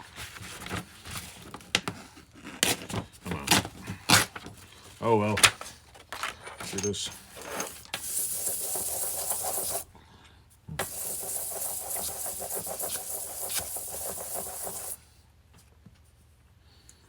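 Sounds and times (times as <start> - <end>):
sandpaper scraping on steel: 8.0 - 9.8, 10.8 - 15.0.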